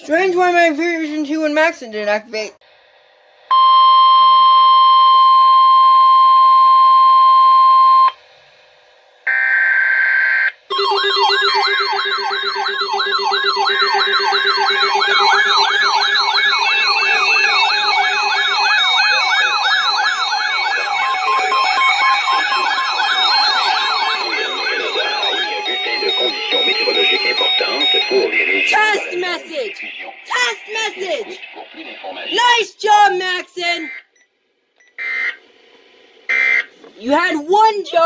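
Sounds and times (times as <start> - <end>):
steady alarm tone: 9.3 - 31.4, 36.3 - 36.7
warbling radio alarms: 9.3 - 34.2, 34.8 - 35.4, 36.3 - 36.7
buzzy digital data burst: 10.7 - 32.5.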